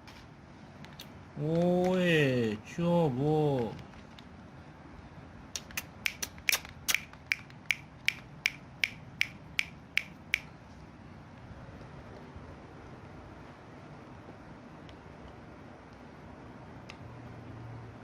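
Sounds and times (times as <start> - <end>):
faint steady background noise: 0.0 - 18.0
sharp clicks: 5.5 - 10.6.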